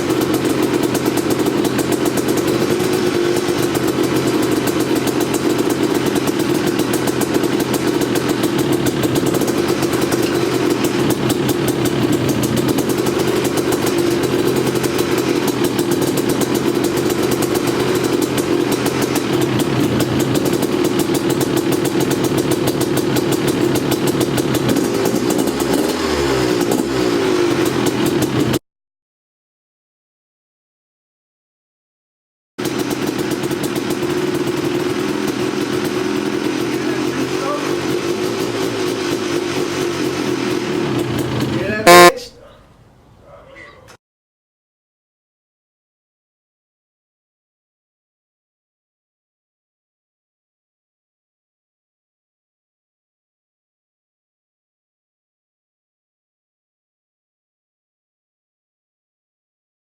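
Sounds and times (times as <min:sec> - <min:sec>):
two-stroke engine running: 0:00.0 - 0:28.6, 0:32.6 - 0:42.2.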